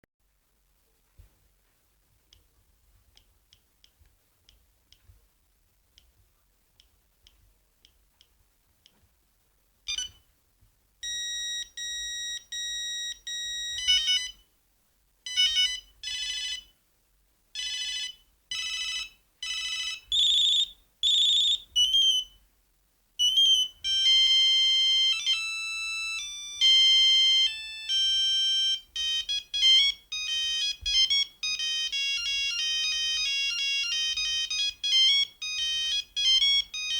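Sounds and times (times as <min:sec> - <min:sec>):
monophonic ringtone melody: 0:11.0 - 0:14.4, 0:15.3 - 0:16.7, 0:17.6 - 0:22.3, 0:23.2 - 0:36.9.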